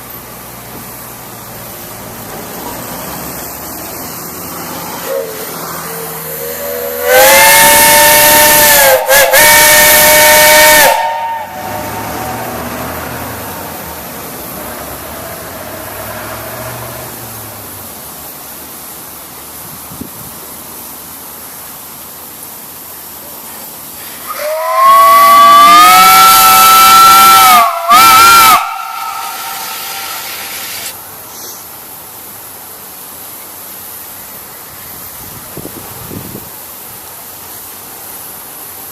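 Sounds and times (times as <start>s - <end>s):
steady hiss: 0.0s - 38.9s
large steam whistle blast: 4.6s - 17.7s, 24.0s - 31.8s.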